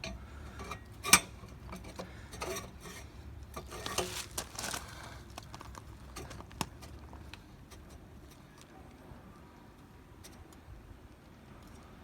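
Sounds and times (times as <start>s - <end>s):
hard objects clinking and scraping: 3.6s - 5.0s.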